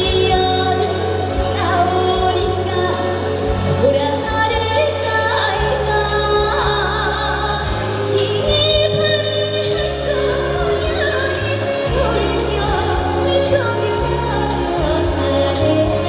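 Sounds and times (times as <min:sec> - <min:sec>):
band accompaniment with bass and beat: 0:00.0 - 0:16.0
woman singing: 0:00.0 - 0:16.0.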